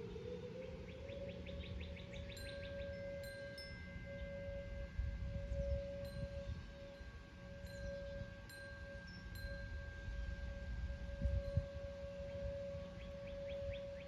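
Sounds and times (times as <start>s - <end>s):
distant warning siren: 0.0s - 14.0s
wind rumbling on microphone: 0.0s - 14.0s.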